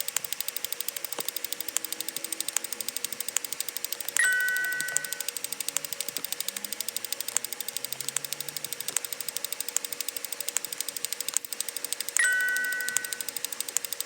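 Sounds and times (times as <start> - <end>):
faint steady hum: 0.0 - 14.0
rapid electronic clicking: 0.0 - 14.0
bright two-tone chime: 4.2 - 5.4, 12.2 - 13.3.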